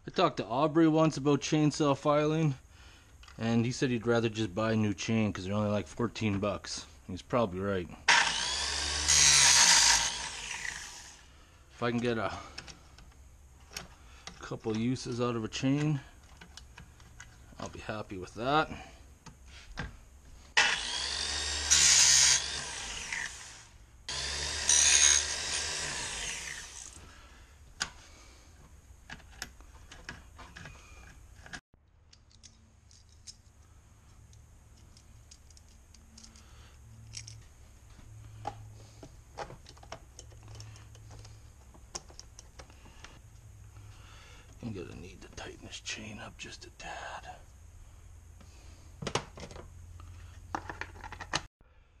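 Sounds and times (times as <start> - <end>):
chain sharpener grinding: 8.1 - 11.2, 20.6 - 27.1.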